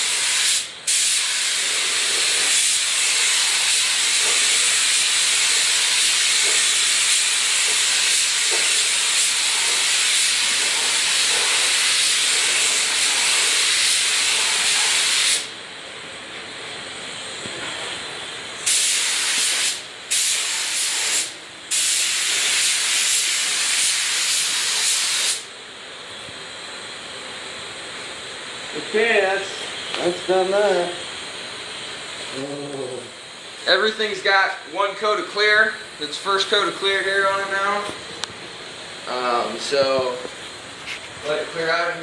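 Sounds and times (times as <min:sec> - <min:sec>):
paint spray gun hissing: 0:00.0 - 0:15.5, 0:18.6 - 0:25.5
faint hiss: 0:18.6 - 0:25.5.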